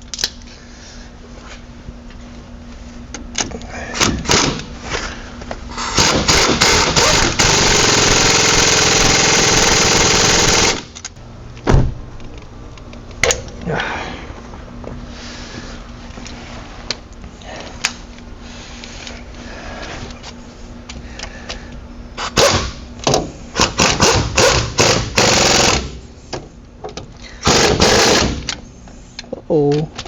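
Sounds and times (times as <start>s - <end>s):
impact wrench running: 4.0s - 4.7s, 5.7s - 11.2s, 22.2s - 26.1s, 27.4s - 28.6s.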